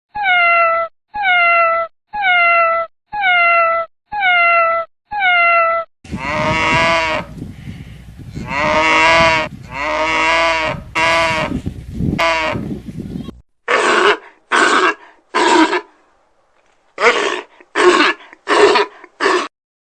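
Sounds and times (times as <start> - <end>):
cat meowing: 0.2 - 5.9
farm animal calling: 0.2 - 7.4.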